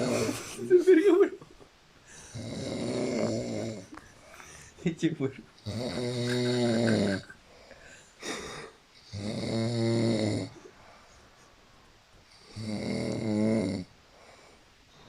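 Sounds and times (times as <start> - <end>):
long pitched snores: 2.2 - 4.0, 5.6 - 7.3, 8.2 - 10.6, 12.3 - 13.9.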